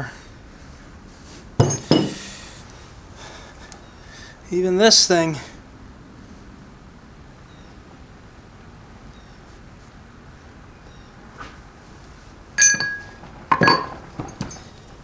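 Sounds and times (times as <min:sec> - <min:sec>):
metal parts clinking and clanking: 0:01.6 - 0:02.3, 0:12.6 - 0:15.0.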